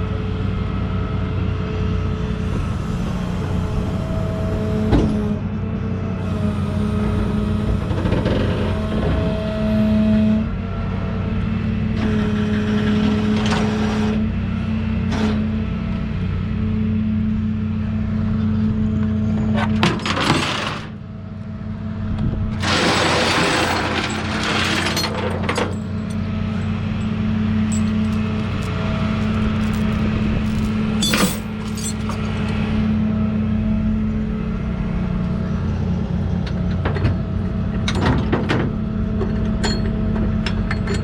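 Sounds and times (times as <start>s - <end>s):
sharp clinks: 25.5s - 32.5s
vehicle engine idling: 25.7s - 36.4s.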